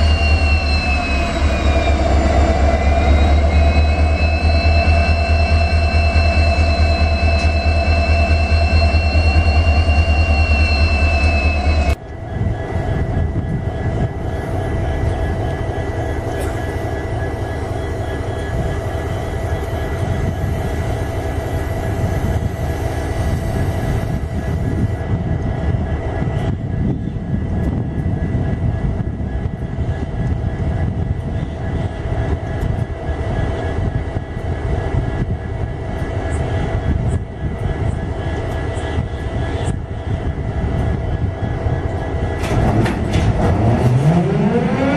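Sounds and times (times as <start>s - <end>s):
loud steady tone: 0.0s - 42.9s
deep diesel engine rumble: 0.0s - 44.9s
high turbocharger hum: 36.2s - 44.9s.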